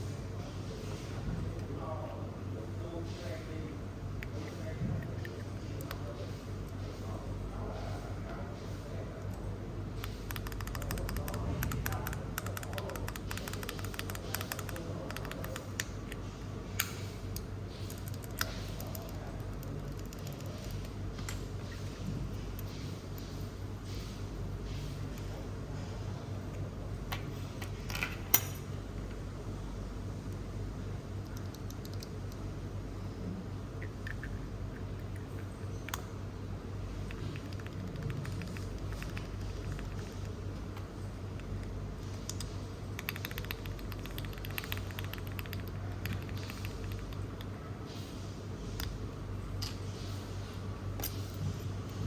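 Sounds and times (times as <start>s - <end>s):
steady low hum: 0.0s - 52.0s
mechanical keyboard keystrokes: 10.0s - 15.8s, 37.1s - 40.0s, 42.2s - 47.2s.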